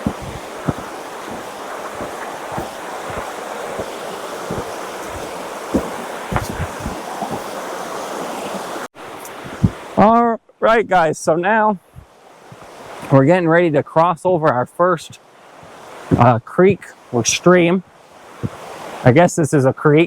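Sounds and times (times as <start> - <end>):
footsteps on trail: 0.0 - 10.0, 11.9 - 13.2
creek rushing over rocks: 0.0 - 20.0.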